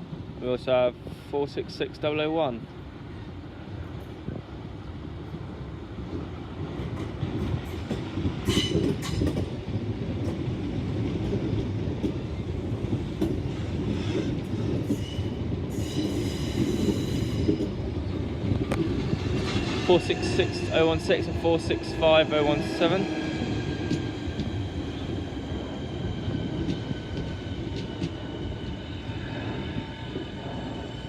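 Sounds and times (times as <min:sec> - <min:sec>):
train wheels clattering on rails: 0:06.0 - 0:30.2.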